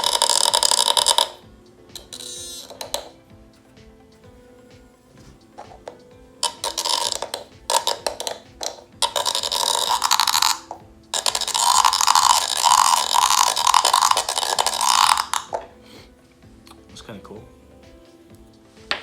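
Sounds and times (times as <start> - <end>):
vibration motor rattling a cup: 0.0 - 3.2, 5.6 - 15.7.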